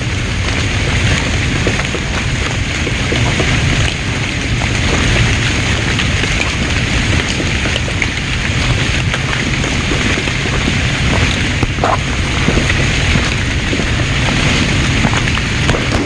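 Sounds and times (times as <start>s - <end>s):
steady rain falling: 0.0s - 16.0s
ticks of raindrops: 0.0s - 16.0s
heavy low rumble: 7.0s - 16.0s.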